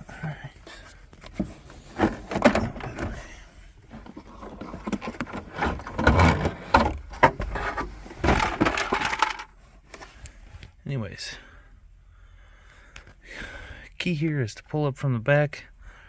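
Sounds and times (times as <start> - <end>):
plastic trim scraping and knocking: 3.9 - 8.9.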